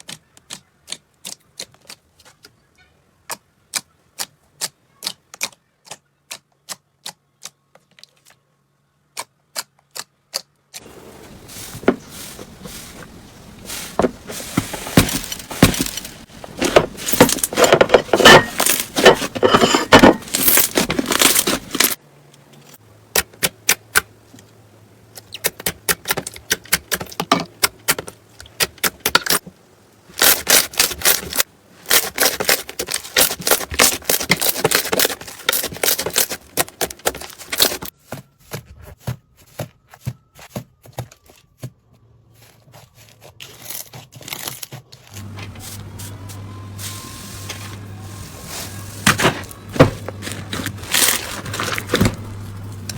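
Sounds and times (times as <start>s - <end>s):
crunchy slime crackling: 47.8s - 52.9s.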